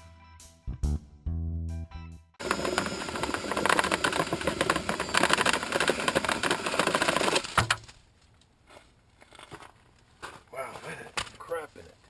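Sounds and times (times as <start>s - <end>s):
drill spinning brush in vent duct: 2.4s - 7.6s.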